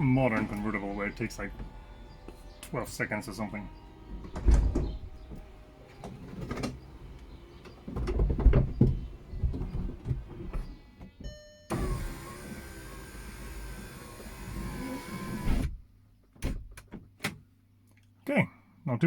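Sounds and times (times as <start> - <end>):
electric motor whine: 0.0 - 11.0, 11.7 - 15.7
folding car roof clunking: 0.0 - 15.8.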